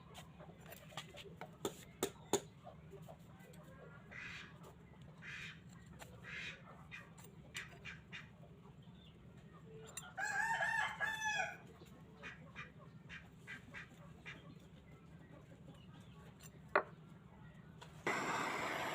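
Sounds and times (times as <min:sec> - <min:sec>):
rooster crowing: 0:10.2 - 0:11.6.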